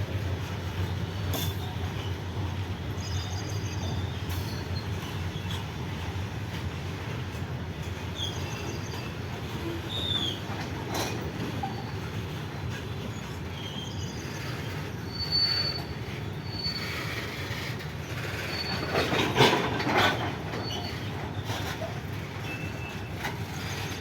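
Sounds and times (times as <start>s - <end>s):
train wagons rumbling past: 0.0s - 24.0s
high-pitched wheel squeals: 13.6s - 17.5s, 18.4s - 19.3s.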